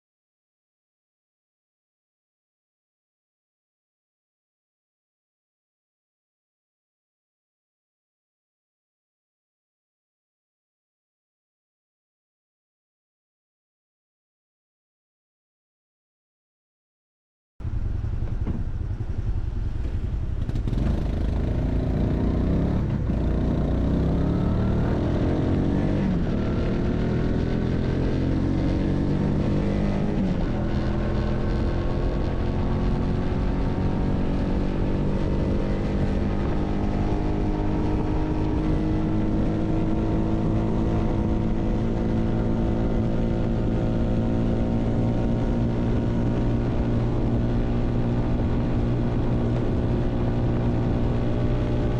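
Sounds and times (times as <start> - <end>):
low wind rumble: 17.6 - 51.9
motorcycle engine accelerating: 17.6 - 51.9.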